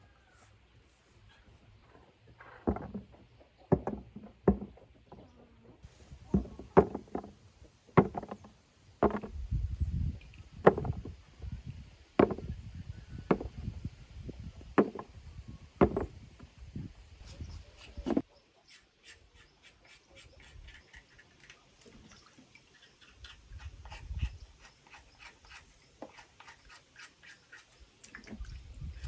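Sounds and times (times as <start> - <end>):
sharp knocks on wood: 2.7 - 5.2, 6.3 - 7.4, 8.0 - 9.4, 10.6 - 11.1, 12.2 - 12.5, 13.3 - 13.6, 14.8 - 15.2, 15.8 - 16.2
dull low thud: 10.6 - 13.9, 15.8 - 16.4.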